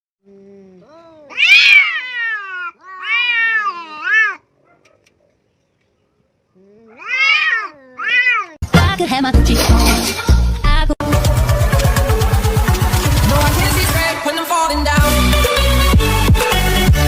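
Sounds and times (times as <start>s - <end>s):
cat meowing: 0.8s - 4.5s, 6.8s - 8.6s.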